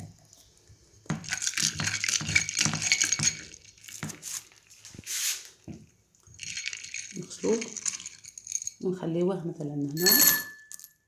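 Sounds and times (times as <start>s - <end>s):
resin lumps clinking against glass: 10.0s - 11.0s.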